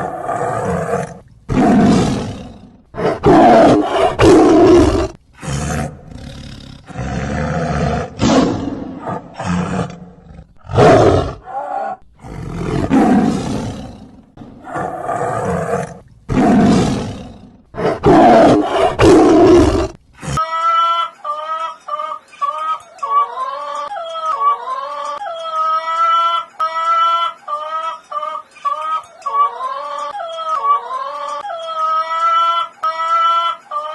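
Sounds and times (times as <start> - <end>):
lion roaring and grunting: 0.0 - 20.4.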